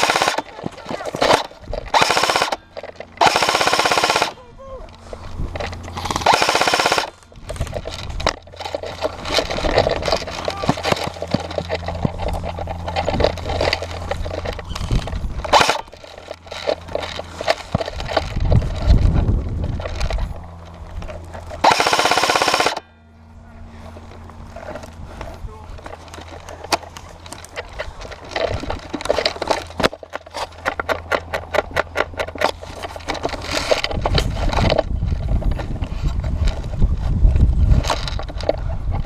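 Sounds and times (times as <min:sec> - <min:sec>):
airsoft guns automatic fire: 0:00.0 - 0:02.6, 0:03.2 - 0:04.4, 0:06.0 - 0:07.2, 0:15.5 - 0:15.9, 0:21.6 - 0:22.8
low hum: 0:00.0 - 0:39.0.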